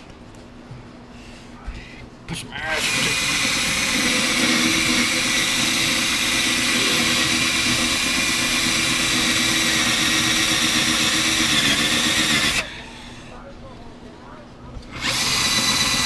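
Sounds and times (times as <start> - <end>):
drill cutting into wood: 2.6 - 13.1, 14.9 - 16.0.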